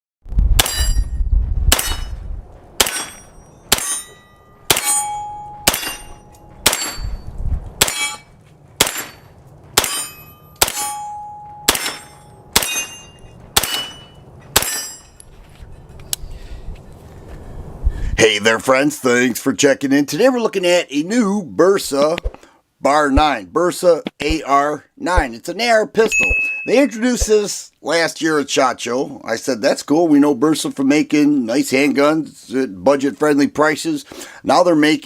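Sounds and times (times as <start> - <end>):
sharp metallic clangs: 0.6 - 15.4, 26.1 - 27.3.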